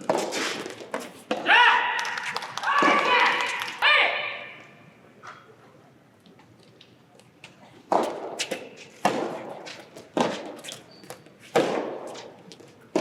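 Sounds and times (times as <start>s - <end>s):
racket striking ball: 0.0s - 1.5s, 7.9s - 10.6s, 11.5s - 13.0s.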